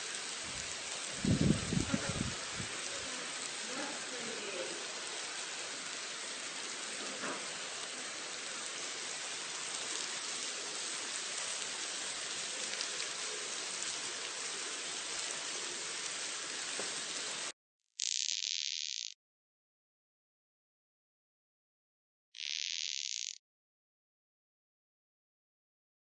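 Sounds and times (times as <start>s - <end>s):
dense hiss with crackle: 0.0s - 18.2s.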